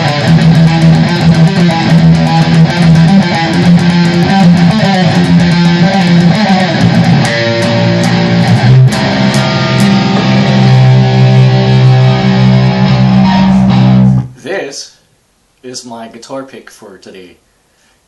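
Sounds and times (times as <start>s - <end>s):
electric guitar playing: 0.0s - 14.4s.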